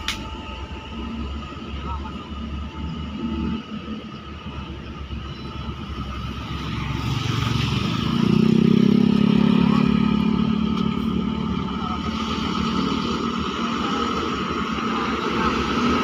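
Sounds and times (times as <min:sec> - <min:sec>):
vehicle engine: 0:06.2 - 0:16.0.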